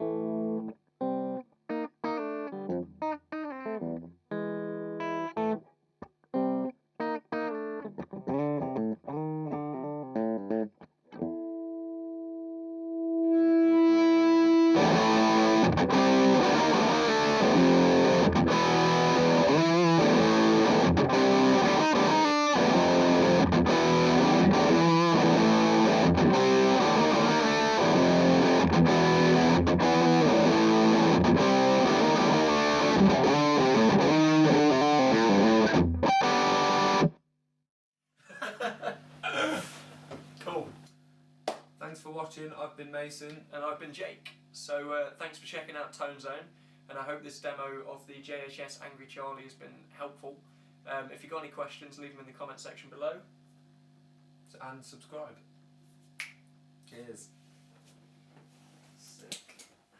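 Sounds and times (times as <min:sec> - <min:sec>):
distorted electric guitar: 0:00.0 - 0:05.6, 0:06.3 - 0:12.0, 0:13.0 - 0:37.2.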